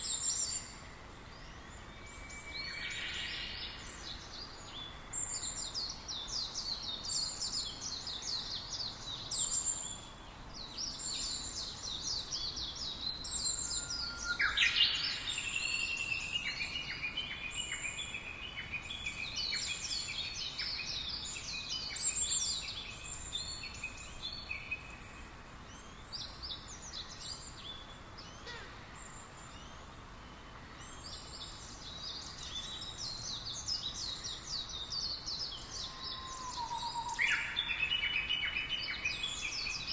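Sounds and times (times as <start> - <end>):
faint background hiss: 0.0 - 39.9
songbirds chirping and singing: 0.0 - 39.9.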